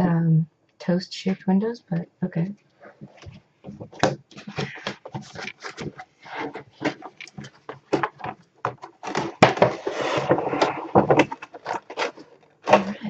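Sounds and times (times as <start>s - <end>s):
plastic packaging rustling: 2.9s - 13.0s
taps clicks and scrapes on packaging: 3.1s - 12.9s.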